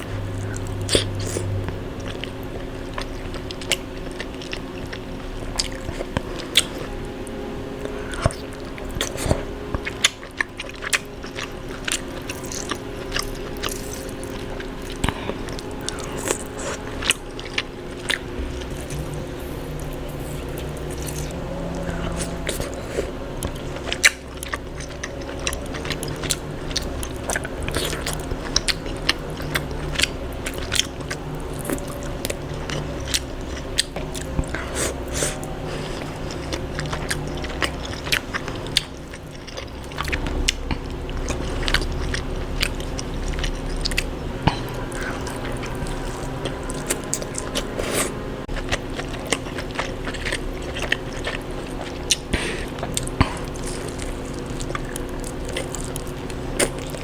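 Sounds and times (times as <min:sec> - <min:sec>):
steady low hum: 0:00.0 - 0:57.0
wet chewing: 0:00.0 - 0:57.0.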